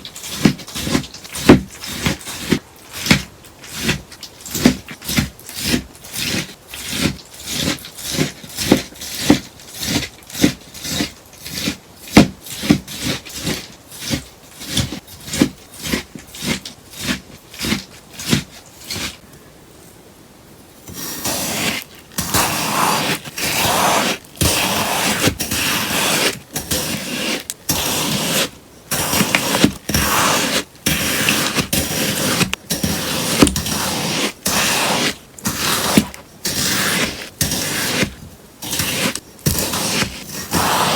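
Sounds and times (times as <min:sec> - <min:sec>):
scissors snipping sponge: 0:00.0 - 0:19.2, 0:20.9 - 0:40.9.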